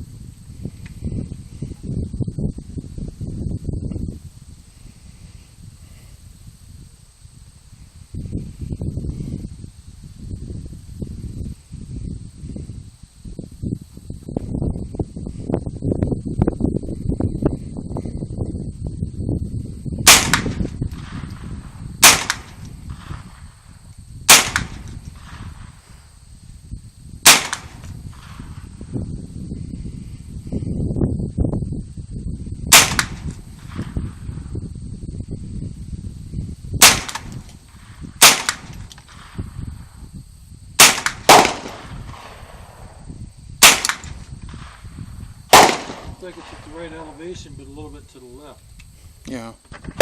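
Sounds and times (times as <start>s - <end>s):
gunshots: 20.1s - 21.2s, 22.0s - 23.4s, 24.3s - 25.6s, 27.2s - 28.4s, 32.7s - 33.9s, 36.8s - 37.4s, 38.2s - 38.8s, 40.8s - 42.6s, 43.6s - 44.8s, 45.5s - 46.8s
gunshots with echo: 45.5s - 46.8s.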